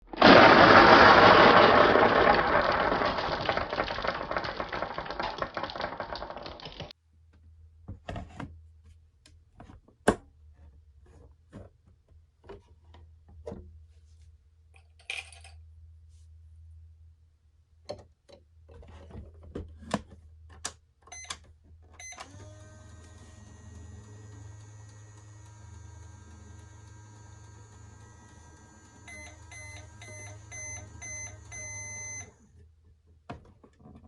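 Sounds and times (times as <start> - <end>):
marbles rattling down track: 0.0 - 6.9
marbles clicking on track: 0.1 - 6.9.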